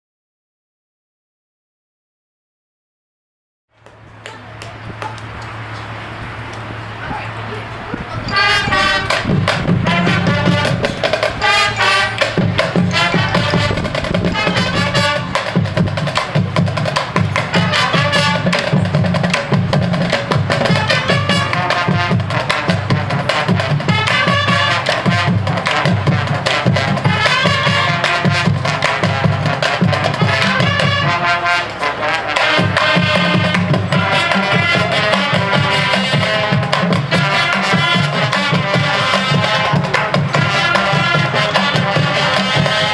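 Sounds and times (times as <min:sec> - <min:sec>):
marching band playing: 0:03.8 - 0:42.9
sharp drum strikes: 0:08.6 - 0:31.2, 0:32.4 - 0:42.9.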